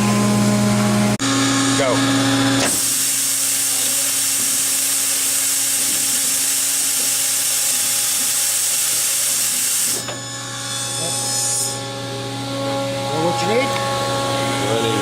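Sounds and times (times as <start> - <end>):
machine hum: 0.0 - 4.4, 10.0 - 15.0.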